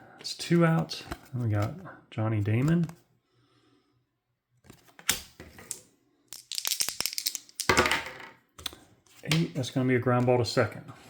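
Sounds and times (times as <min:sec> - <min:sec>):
dice rolling on tabletop: 0:06.4 - 0:08.4.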